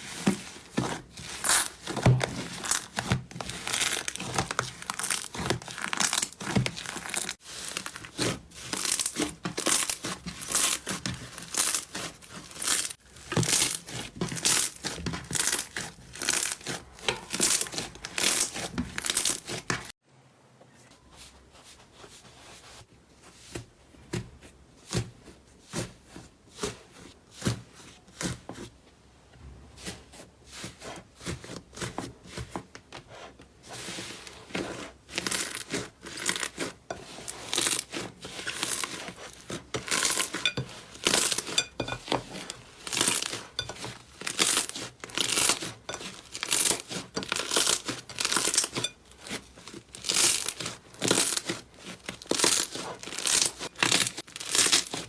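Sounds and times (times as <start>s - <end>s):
slime crackling and popping: 1.4s - 19.9s.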